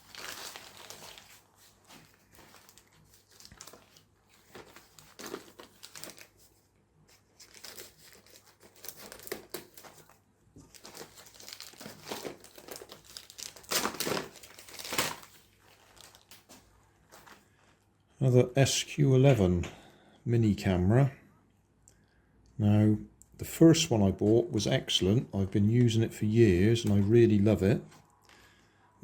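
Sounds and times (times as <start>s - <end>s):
wrapping crinkling and tearing: 0.0s - 17.5s.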